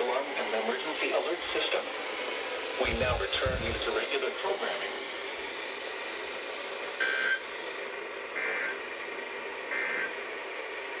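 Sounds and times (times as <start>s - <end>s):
radio hiss: 2.8s - 5.0s, 8.3s - 9.1s, 9.7s - 10.2s.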